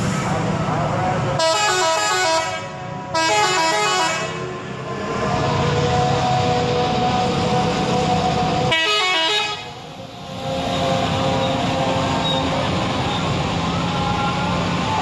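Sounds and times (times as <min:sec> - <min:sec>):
multi-tone musical air horn: 0:01.4 - 0:04.4, 0:08.7 - 0:09.8.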